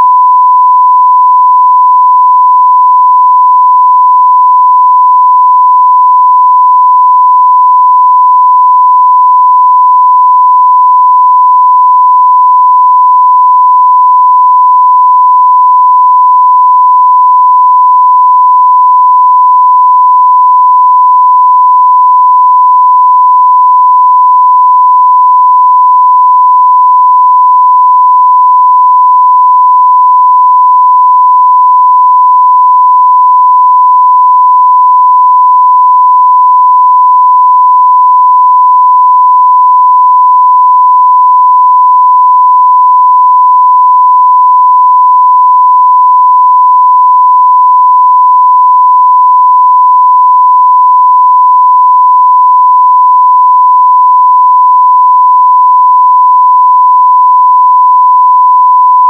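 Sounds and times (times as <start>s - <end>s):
sine-wave test tone: 0.0s - 59.0s.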